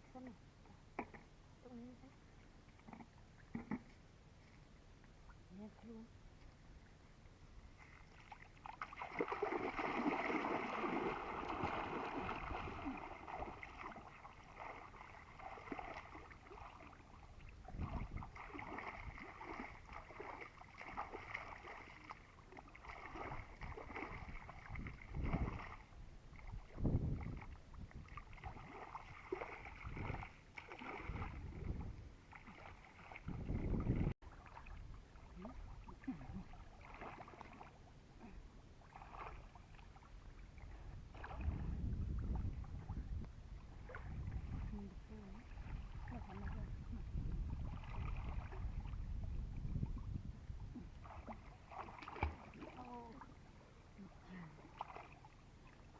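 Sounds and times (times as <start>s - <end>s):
water sloshing and splashing: 7.7s - 55.9s
heavy splashes in water: 8.6s - 17.0s, 17.8s - 22.2s, 28.2s - 31.6s, 51.0s - 53.0s.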